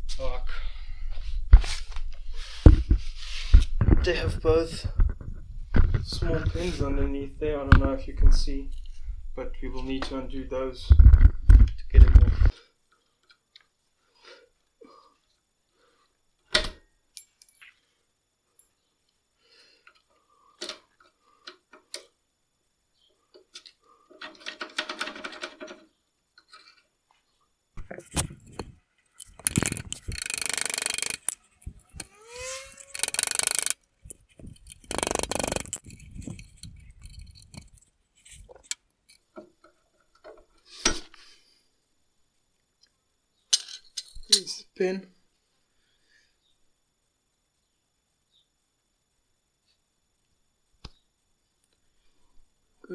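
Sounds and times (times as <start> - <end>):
tools clinking and knocking metal: 29.1 - 32.1, 32.7 - 39.3
loud rasping bursts: 29.4 - 33.8, 34.6 - 36.5
metal on metal squeak: 32.0 - 33.7.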